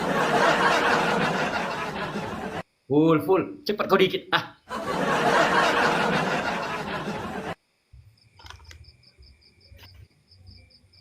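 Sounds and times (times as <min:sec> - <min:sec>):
cricket chirping: 0:06.4 - 0:11.0.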